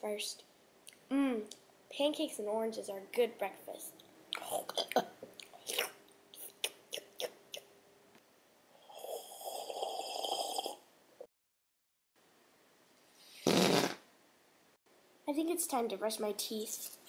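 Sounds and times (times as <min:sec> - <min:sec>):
breathy mouth burst: 0:13.2 - 0:14.0.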